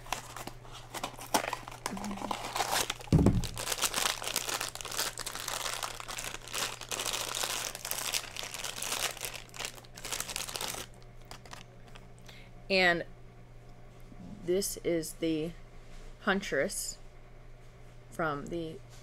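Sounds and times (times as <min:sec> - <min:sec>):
packaging crinkling and tearing: 0:00.0 - 0:12.0.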